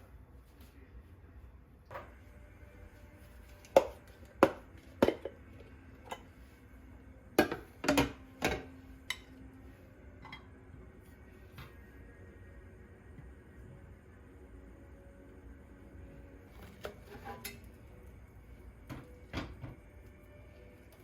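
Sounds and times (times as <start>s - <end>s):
dishes and utensils clinking: 3.7s - 6.4s, 7.4s - 9.4s, 10.2s - 10.6s, 16.6s - 17.8s.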